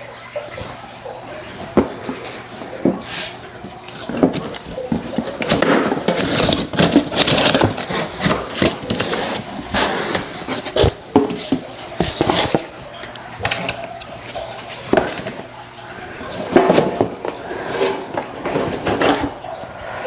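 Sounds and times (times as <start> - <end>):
parts scraping and knocking: 1.6 - 15.4, 16.2 - 19.4
packaging rustling: 1.6 - 15.6.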